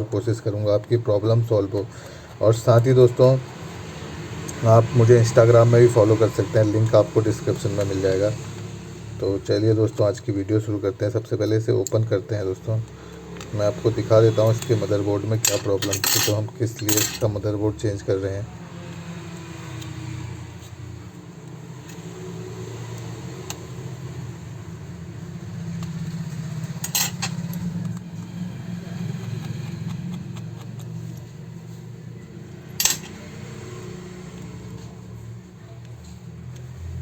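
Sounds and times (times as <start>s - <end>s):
clicks and clinks of tools: 15.4s - 17.4s, 25.8s - 28.3s, 32.8s - 33.3s.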